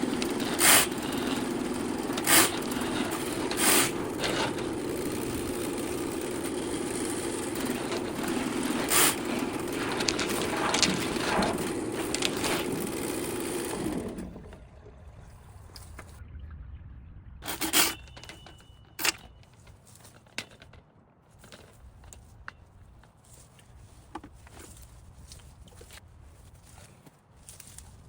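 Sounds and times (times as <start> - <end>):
motor running: 0.0 - 16.2.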